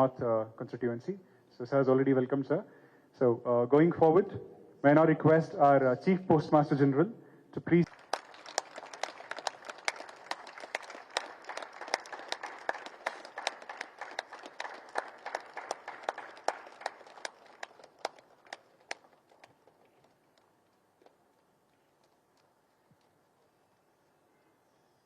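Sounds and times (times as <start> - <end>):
audience applauding: 7.8 - 21.4.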